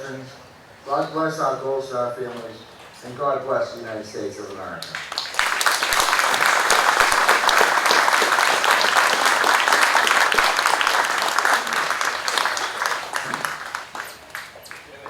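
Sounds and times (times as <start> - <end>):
crowd applauding: 4.8 - 15.0.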